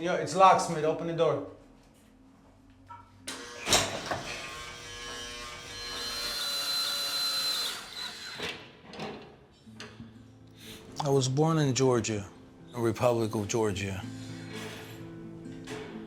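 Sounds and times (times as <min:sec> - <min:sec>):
power drill whining: 0:03.3 - 0:08.6.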